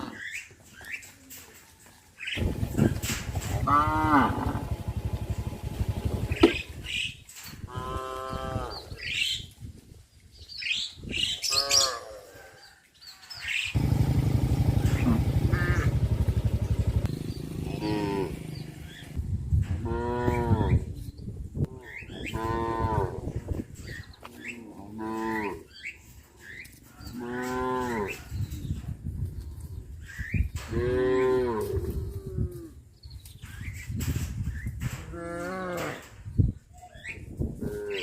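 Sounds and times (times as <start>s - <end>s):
low rumbling noise: 2.4s - 6.8s, 13.8s - 20.0s
cattle mooing: 3.0s - 4.9s, 13.8s - 19.1s, 22.2s - 23.2s.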